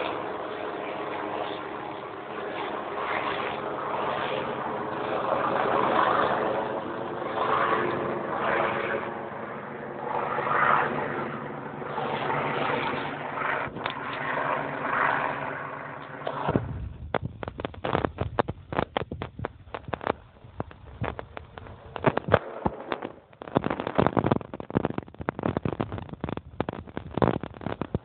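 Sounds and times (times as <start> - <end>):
helicopter engine and rotor drone: 0.0 - 19.0
sharp crackling pops: 11.9 - 15.2, 15.9 - 28.0.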